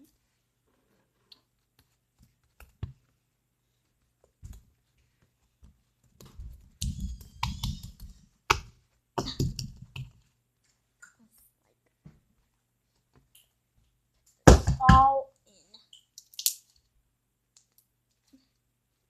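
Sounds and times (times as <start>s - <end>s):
slime clicking and squelching: 15.9s - 16.9s.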